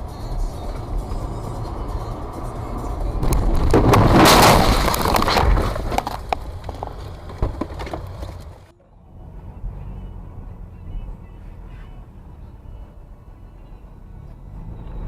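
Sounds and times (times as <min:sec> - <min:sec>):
debris clicks and rattles: 0:03.2 - 0:08.6
vehicle crash crunch: 0:03.2 - 0:08.7.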